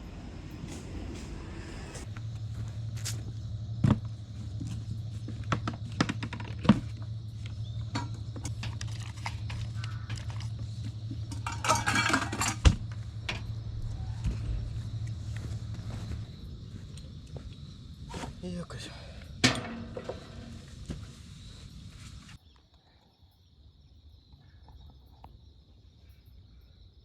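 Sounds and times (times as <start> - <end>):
steady low hum: 0.0 - 22.4
objects clinking and knocking: 7.8 - 13.5, 19.4 - 21.0
rattling rustle: 7.8 - 16.3, 19.4 - 22.4.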